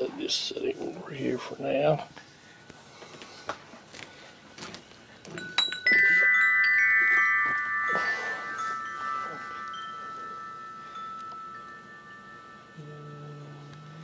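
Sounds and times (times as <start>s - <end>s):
bell-like chime tones: 5.3s - 14.0s.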